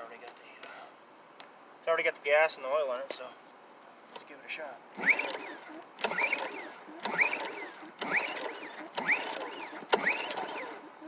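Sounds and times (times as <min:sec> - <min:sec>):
recoil starter pull whir: 0:05.0 - 0:11.0.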